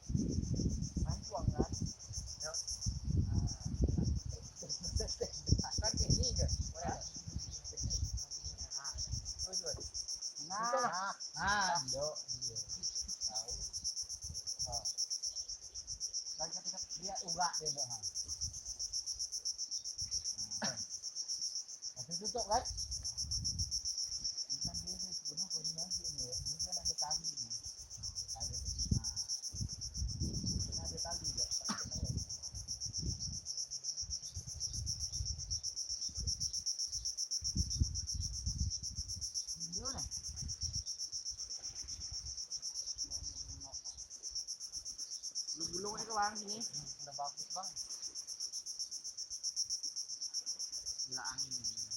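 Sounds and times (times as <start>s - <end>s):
wind rumble on microphone: 0.0s - 10.0s, 22.2s - 25.1s, 25.8s - 42.4s
crickets chirping: 0.0s - 51.9s
insects trilling: 0.0s - 51.9s
people talking in low voices: 3.2s - 13.8s, 39.6s - 40.4s.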